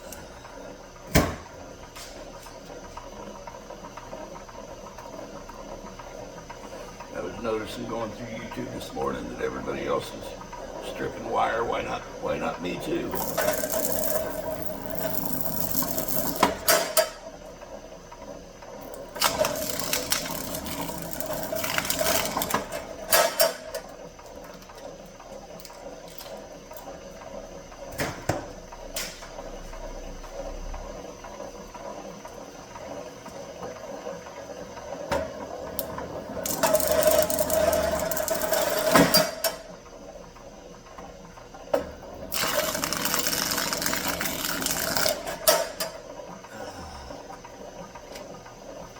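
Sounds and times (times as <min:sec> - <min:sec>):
wire-stripping machine running: 0:07.1 - 0:27.4, 0:35.6 - 0:39.8, 0:42.0 - 0:46.4.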